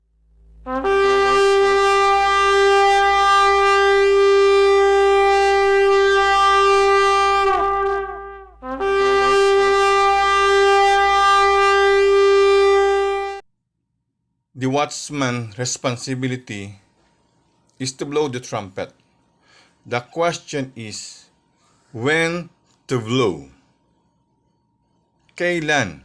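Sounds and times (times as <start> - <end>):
alarm horn blasts: 0.6 - 13.4.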